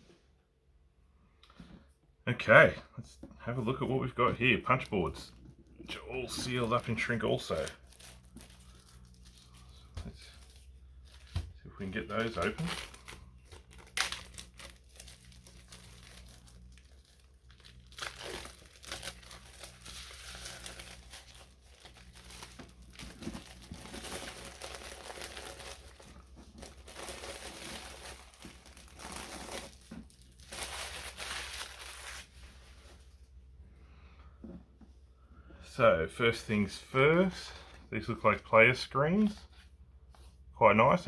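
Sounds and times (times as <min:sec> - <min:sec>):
shrink wrap tearing and crinkling: 0:06.2 - 0:32.4.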